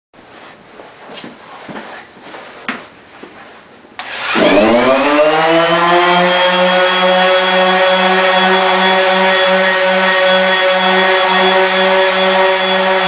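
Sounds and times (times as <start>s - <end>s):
electric sander running: 4.0s - 13.0s.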